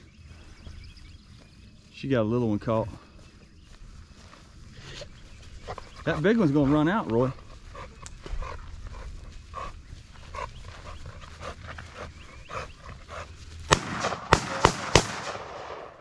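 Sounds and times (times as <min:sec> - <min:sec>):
rifle shots: 0:13.7 - 0:16.0.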